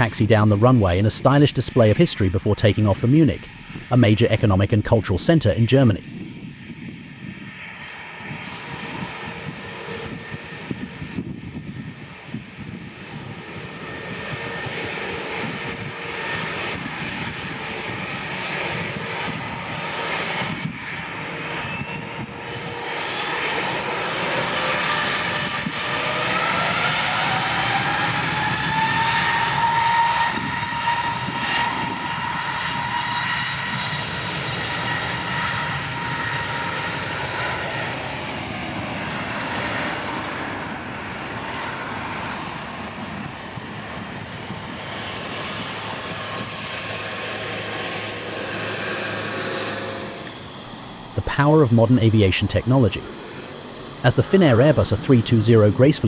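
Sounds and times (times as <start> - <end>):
jet engines spooling up: 0.0 - 56.0.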